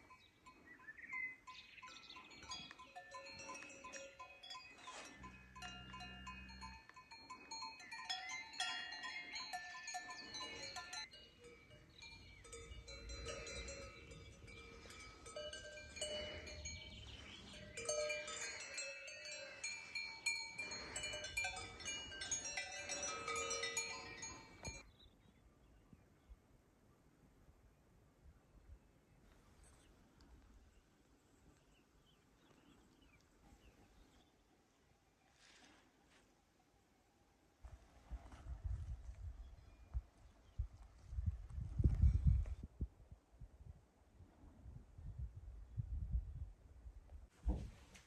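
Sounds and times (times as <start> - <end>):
livestock bells clanking: 0.0 - 24.8.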